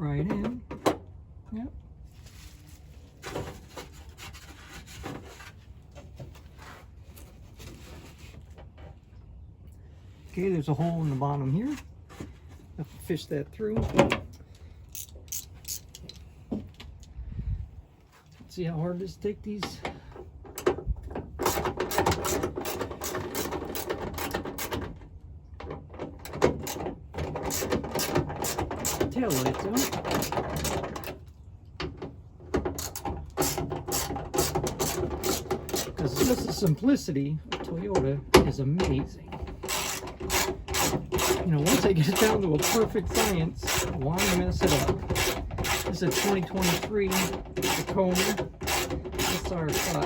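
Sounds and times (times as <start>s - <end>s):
ratchet wrench clicking: 14.9s - 16.2s.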